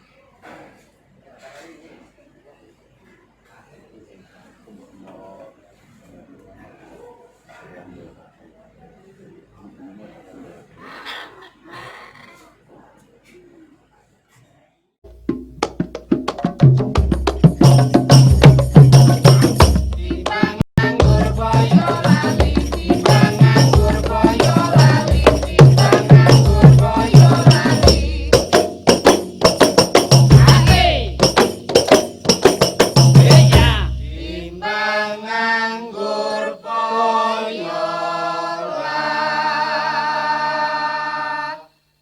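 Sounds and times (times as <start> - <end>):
song with heavy beat: 15.2 - 33.8.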